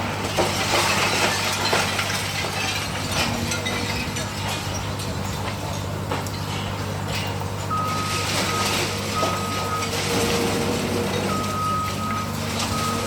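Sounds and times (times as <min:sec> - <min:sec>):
diesel engine running: 0:00.0 - 0:13.0
warning alarm beeps: 0:11.2 - 0:13.0.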